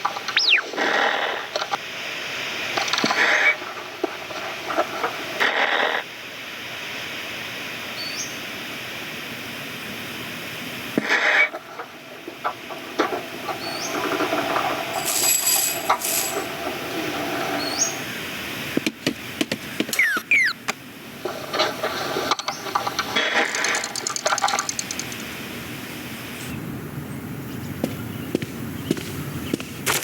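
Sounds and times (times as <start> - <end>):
noisy bursts: 0.0 - 7.9
steady hiss: 0.0 - 20.0, 20.6 - 27.4
knocks and clatters: 21.5 - 25.3.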